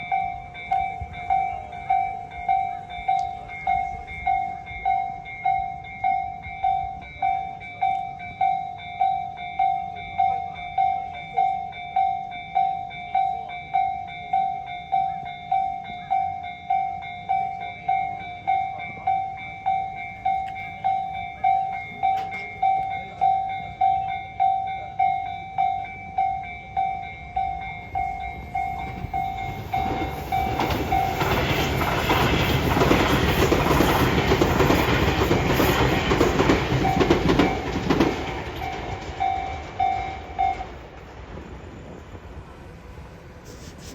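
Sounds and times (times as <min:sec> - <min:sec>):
level crossing bell ringing: 0:00.0 - 0:31.4
electric train rumble: 0:00.0 - 0:43.9.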